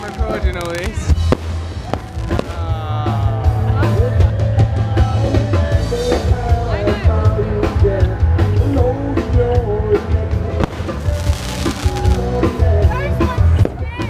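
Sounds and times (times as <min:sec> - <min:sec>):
music with heavy bass beat: 0:00.8 - 0:14.0.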